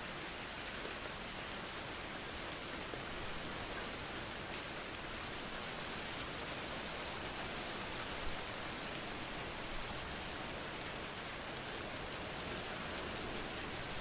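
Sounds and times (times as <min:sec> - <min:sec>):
steady rain falling: 0:00.0 - 0:14.0
raindrop ticks: 0:00.6 - 0:01.1, 0:08.9 - 0:14.0.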